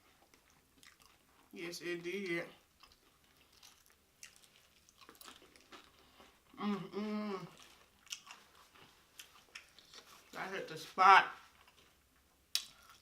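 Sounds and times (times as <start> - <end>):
chewing chips: 0.0 - 1.6, 2.6 - 6.6, 7.4 - 10.4
person humming mmm: 6.5 - 7.6.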